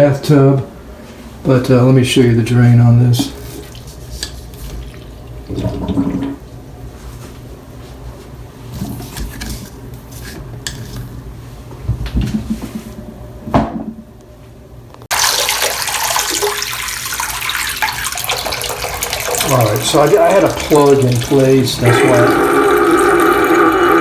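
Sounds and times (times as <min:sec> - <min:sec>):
water gushing from drain hose: 0:15.1 - 0:24.0.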